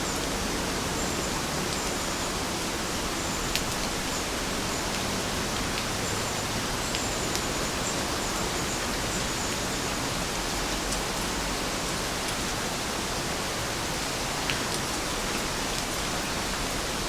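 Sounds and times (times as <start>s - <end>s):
heavy rain hissing: 0.0s - 17.0s
raindrops ticking: 0.1s - 11.1s.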